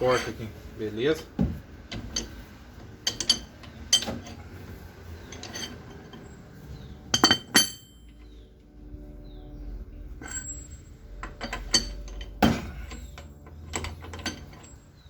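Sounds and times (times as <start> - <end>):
wrench clinking on metal nut: 3.0 - 4.4, 5.3 - 6.3, 10.2 - 15.0.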